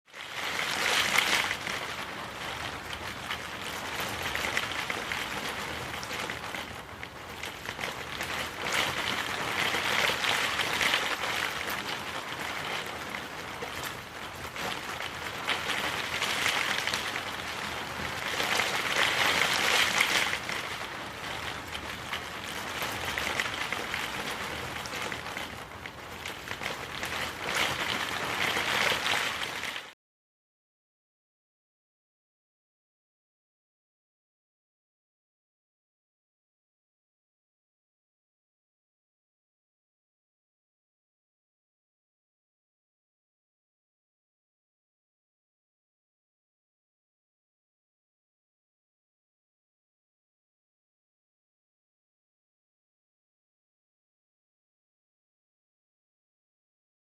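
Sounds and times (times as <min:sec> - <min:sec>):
rain falling steadily: 0:00.1 - 0:30.0.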